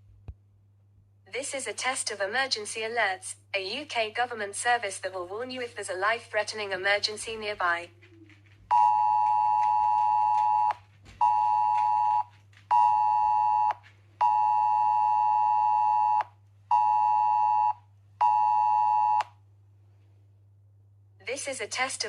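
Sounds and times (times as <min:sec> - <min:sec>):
phone emergency alert tone: 0:08.7 - 0:19.2.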